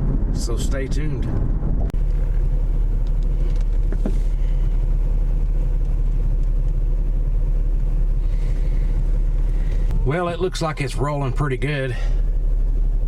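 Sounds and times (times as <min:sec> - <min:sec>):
car engine rumble inside cabin: 0:00.0 - 0:13.0.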